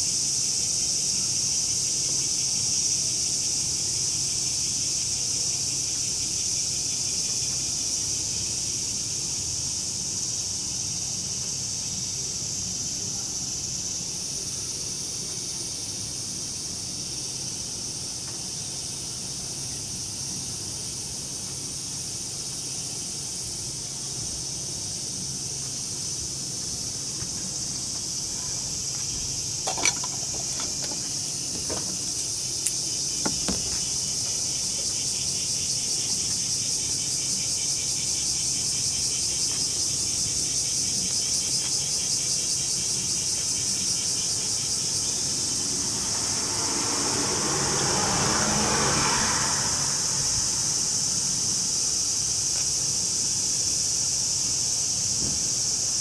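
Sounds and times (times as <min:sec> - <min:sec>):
insects singing: 0:22.6 - 0:56.0
wide noise: 0:44.6 - 0:51.9.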